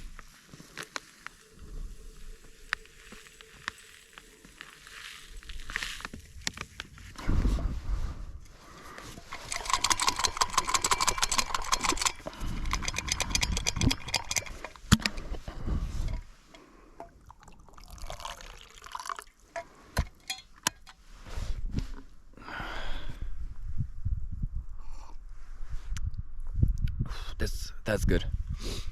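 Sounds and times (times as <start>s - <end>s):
sharp clicks and knocks: 9.1s - 16.2s
tea pouring into cup: 17.0s - 19.7s.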